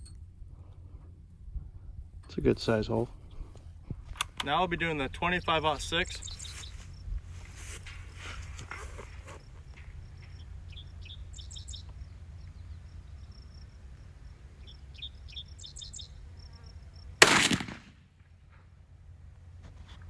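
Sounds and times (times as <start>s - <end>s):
low background noise: 0.0s - 20.0s
birds chirping: 2.4s - 17.7s
rifle shot: 17.2s - 18.2s.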